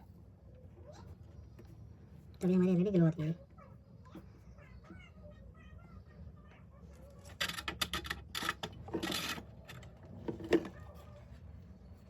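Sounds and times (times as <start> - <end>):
rustling and scraping: 7.0 - 12.0.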